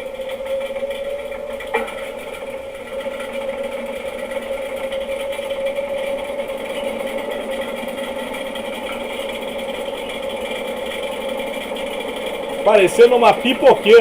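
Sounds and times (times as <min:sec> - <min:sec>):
fast metallic rattle: 0:00.0 - 0:14.0
washing machine spinning: 0:00.0 - 0:14.0.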